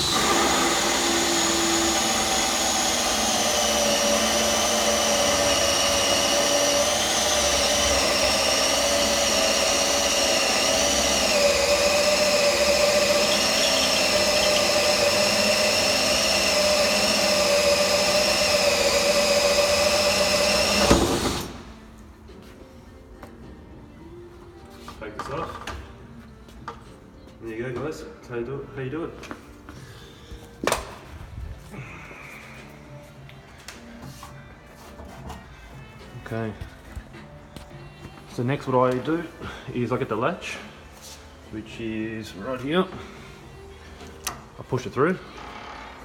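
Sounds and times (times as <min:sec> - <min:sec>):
power drill whining through wood: 0:00.0 - 0:21.7.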